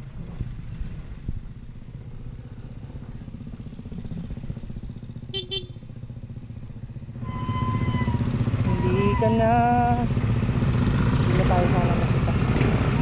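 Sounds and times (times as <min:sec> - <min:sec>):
scooter engine running: 0:01.6 - 0:13.0
horn beeping: 0:07.2 - 0:09.6.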